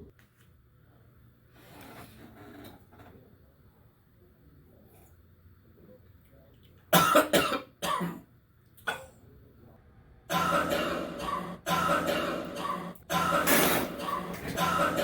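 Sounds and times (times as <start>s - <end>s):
person coughing hard: 7.0s - 8.2s, 10.3s - 15.0s.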